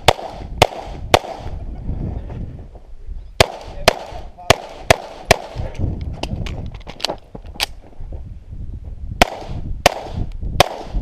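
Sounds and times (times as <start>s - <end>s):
pistol shots: 0.0s - 1.5s, 3.4s - 5.6s, 9.2s - 11.0s.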